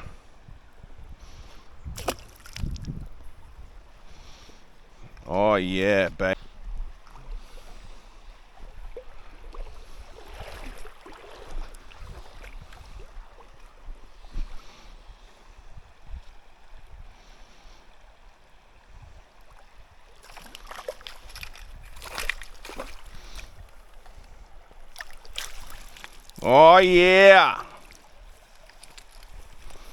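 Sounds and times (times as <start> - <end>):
wind on microphone: 0.0 - 4.1, 6.0 - 17.2
water splashing and sloshing: 0.0 - 5.2, 5.9 - 29.9.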